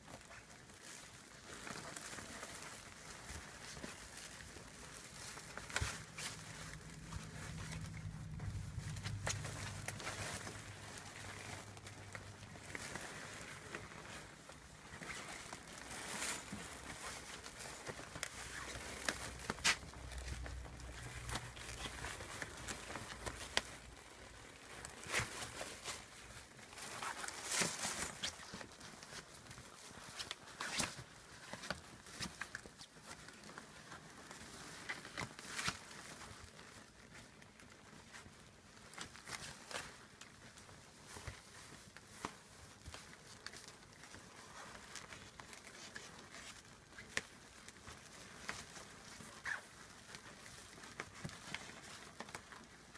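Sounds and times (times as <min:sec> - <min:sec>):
puppies scuffling and pattering: 0:00.0 - 0:52.9.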